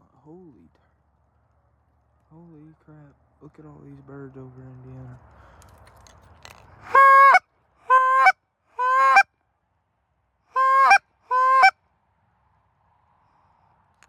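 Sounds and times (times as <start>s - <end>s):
goose call honks: 6.8s - 9.2s, 10.6s - 11.7s.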